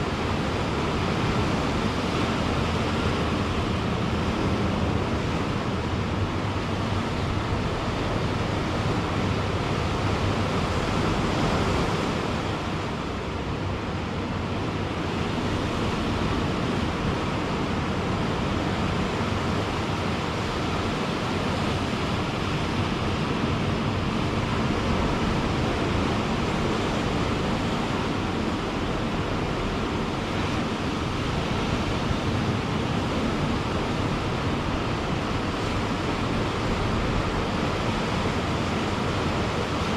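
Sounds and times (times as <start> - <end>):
ocean surf breaking on a beach: 0.0 - 39.9.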